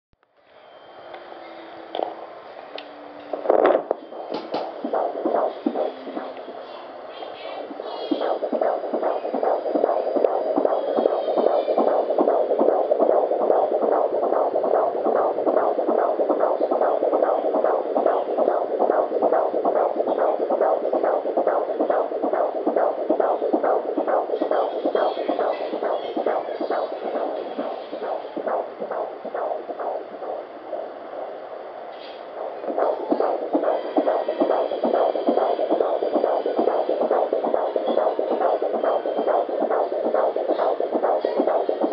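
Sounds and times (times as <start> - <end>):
fetal heartbeat on doppler monitor: 3.3 - 41.9.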